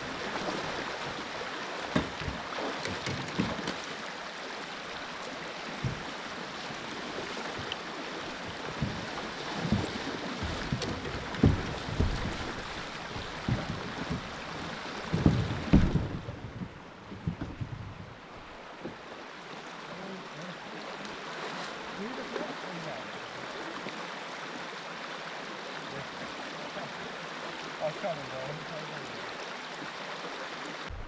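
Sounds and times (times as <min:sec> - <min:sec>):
river water rushing: 0:00.0 - 0:31.0
short low thumps: 0:09.7 - 0:18.2.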